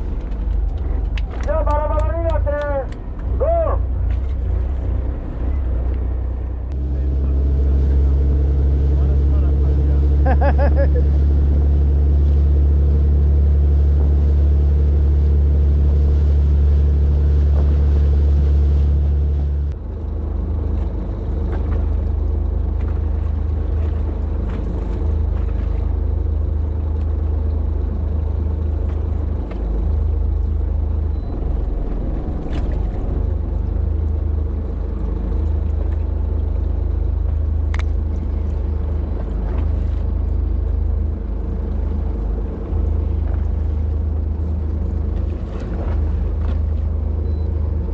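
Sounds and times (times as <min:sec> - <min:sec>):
boat engine running: 0:00.0 - 0:47.9.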